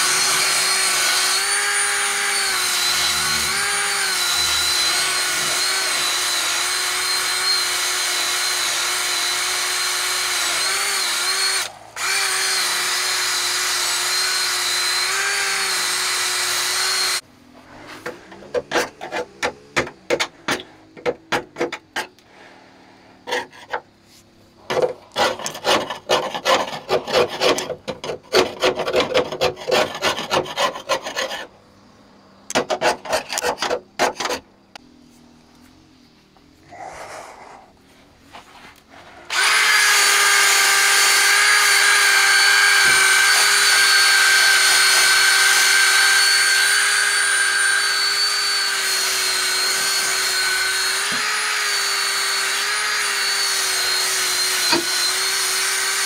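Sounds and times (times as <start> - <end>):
handheld power tool running: 0.0 - 17.2, 39.3 - 56.0
scraping strokes: 17.5 - 19.6, 36.7 - 39.3.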